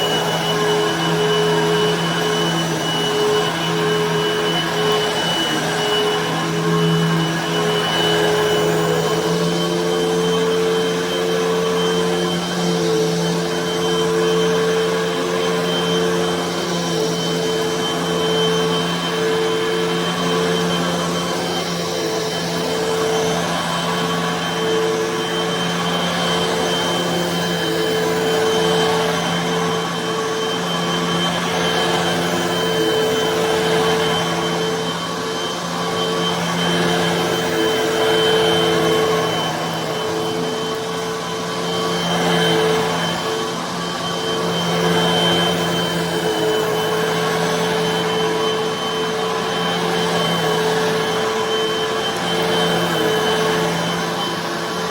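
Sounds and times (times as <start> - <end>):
vacuum cleaner running on carpet: 0.0 - 54.9.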